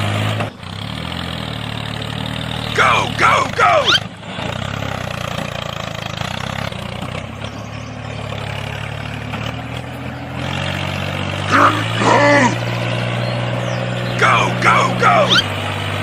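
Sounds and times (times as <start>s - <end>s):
engine running: 0.0s - 16.0s
short cry with sliding pitch: 2.8s - 4.1s, 11.5s - 12.8s, 14.2s - 15.5s.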